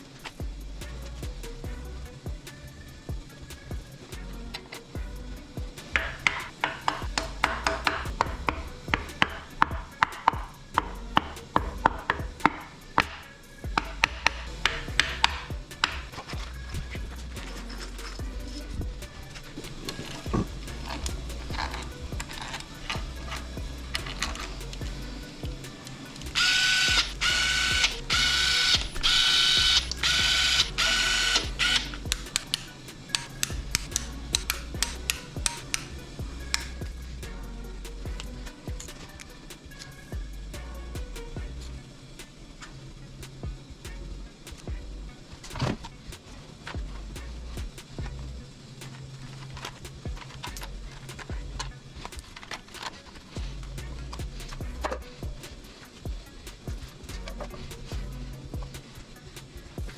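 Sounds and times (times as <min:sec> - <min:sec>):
percussive beat of sharp clicks: 0:00.3 - 0:28.9, 0:29.6 - 0:37.3, 0:45.5 - 0:48.2, 0:53.4 - 0:59.9
low bass line: 0:00.4 - 0:39.0, 0:40.1 - 0:41.8, 0:43.0 - 0:45.2, 0:46.8 - 0:48.5, 0:50.0 - 0:51.8, 0:53.4 - 0:58.9.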